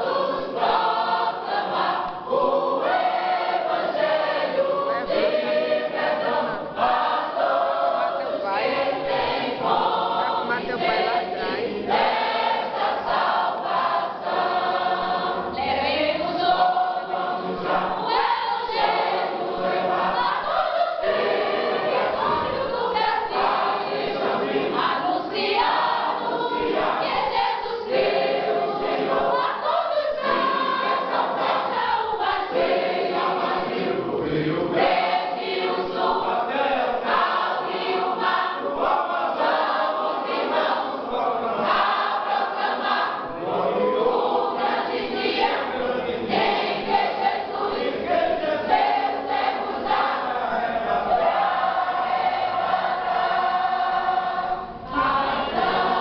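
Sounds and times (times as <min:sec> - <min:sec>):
choir singing a hymn: 0:00.0 - 0:56.0.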